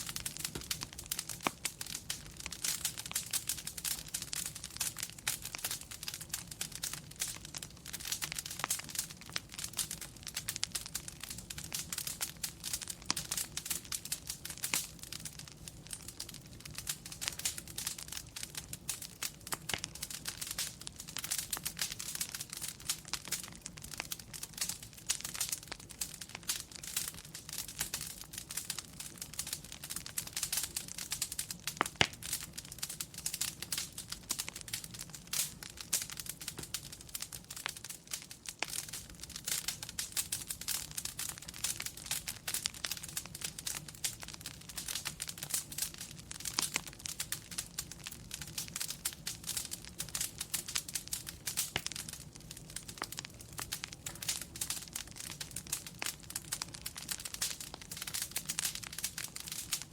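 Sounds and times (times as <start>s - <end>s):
wood fire crackling: 0.0s - 59.9s.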